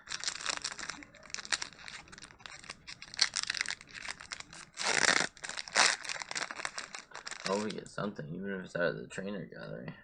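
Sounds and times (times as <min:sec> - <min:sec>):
foil wrapper tearing and crinkling: 0:00.0 - 0:07.8.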